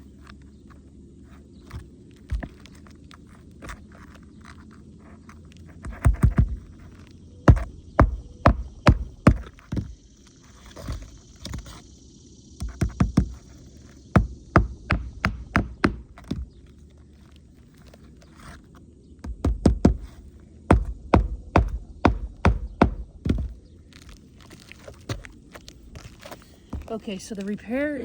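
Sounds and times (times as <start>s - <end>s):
hammer knocking nails into shingle: 7.5s - 10.0s, 14.1s - 16.5s, 19.2s - 23.6s.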